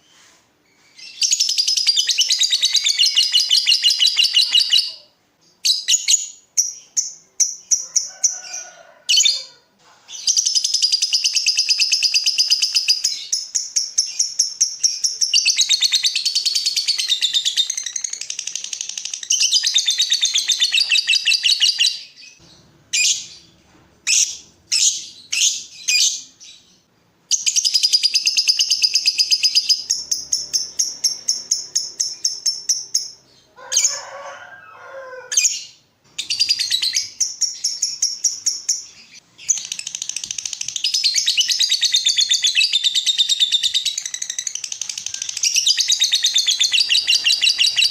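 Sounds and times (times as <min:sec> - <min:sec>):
bird chattering chirps: 0:01.1 - 0:05.1, 0:27.4 - 0:33.9, 0:35.4 - 0:47.9.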